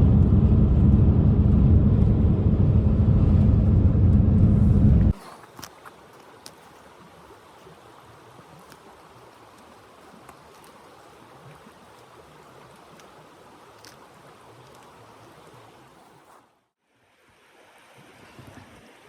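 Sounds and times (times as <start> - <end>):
faint steady rushing noise: 0.0 - 5.2.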